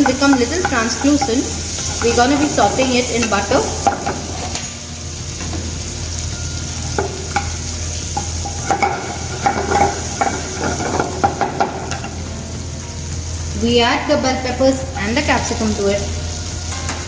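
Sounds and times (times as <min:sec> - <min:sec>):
utensil knocking and scraping pan: 0:00.0 - 0:04.7, 0:08.2 - 0:12.2
onions sizzling in a pan: 0:00.0 - 0:17.0.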